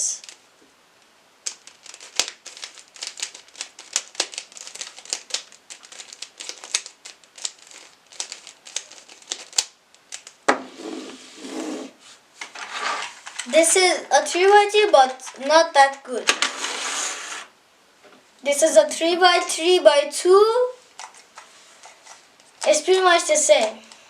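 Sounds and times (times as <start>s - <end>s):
puzzle cube plastic clicking: 1.4s - 10.4s
soft handling rustle: 20.7s - 22.9s.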